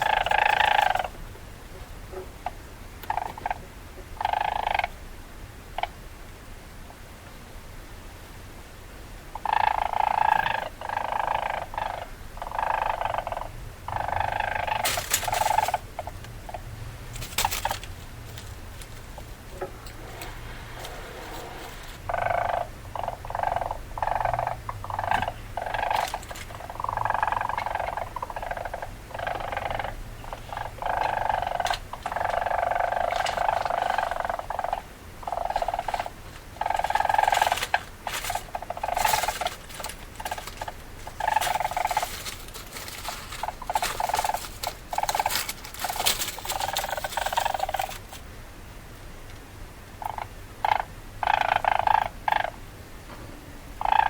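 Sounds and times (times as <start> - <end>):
weasel calling: 0.0 - 1.2, 4.2 - 4.9, 9.4 - 16.7, 19.2 - 48.2, 50.0 - 52.6, 53.8 - 54.0.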